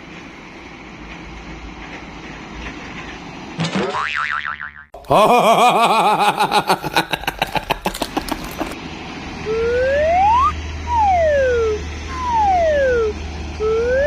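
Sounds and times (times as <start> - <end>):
low engine hum: 8.5 - 14.0
siren-like whoops: 9.4 - 14.0.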